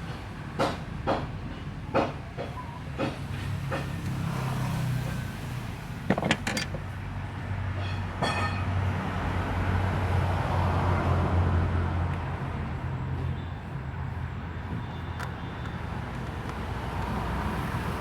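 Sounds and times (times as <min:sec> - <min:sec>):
sharp clicks and knocks: 0:06.0 - 0:07.0.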